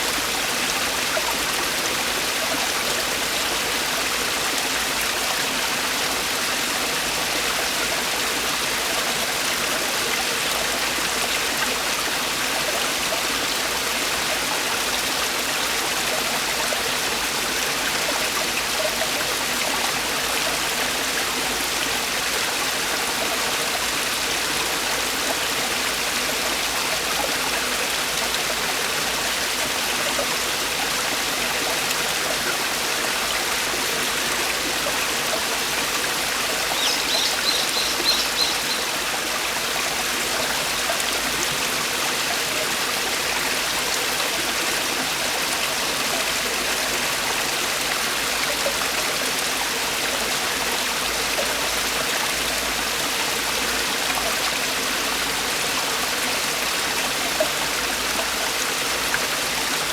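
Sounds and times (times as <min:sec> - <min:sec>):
stream rushing over rocks: 0:00.0 - 0:59.9
bird chirping: 0:36.8 - 0:39.0.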